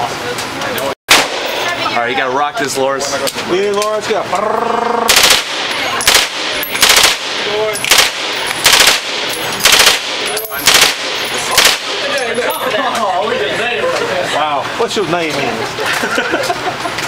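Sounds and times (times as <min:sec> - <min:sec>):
gunshots with echo: 0:01.1 - 0:01.9, 0:05.1 - 0:12.3.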